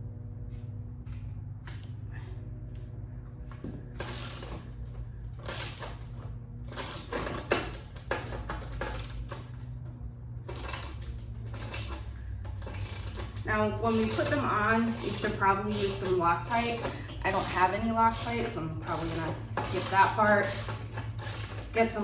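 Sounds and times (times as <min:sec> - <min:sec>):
ratchet wrench clicking: 0:04.0 - 0:04.8, 0:05.4 - 0:09.7, 0:10.5 - 0:21.8.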